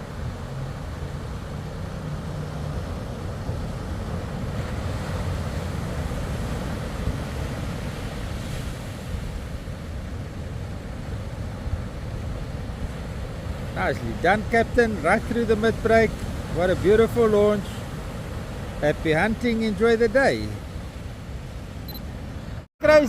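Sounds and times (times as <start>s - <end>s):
outboard boat engines running: 0.0s - 7.2s.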